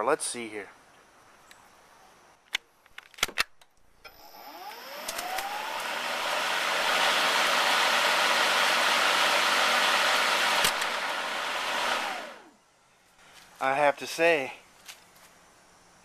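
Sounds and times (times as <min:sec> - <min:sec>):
control clicks: 0:03.2 - 0:05.6
lawn mower motor and blade whirring: 0:04.1 - 0:12.6.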